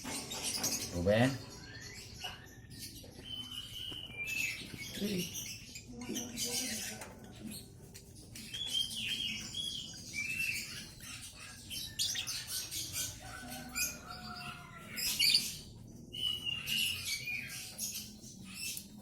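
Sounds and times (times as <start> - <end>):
bird chirping high calls: 8.5 - 18.8.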